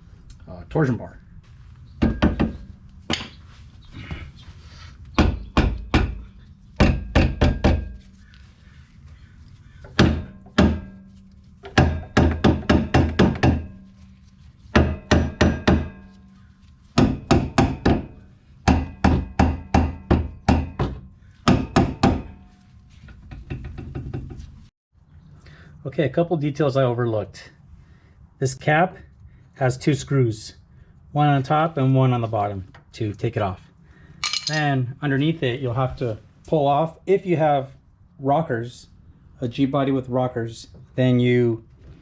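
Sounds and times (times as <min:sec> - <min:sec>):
hammer striking metal: 0:10.0 - 0:13.9, 0:14.8 - 0:16.4.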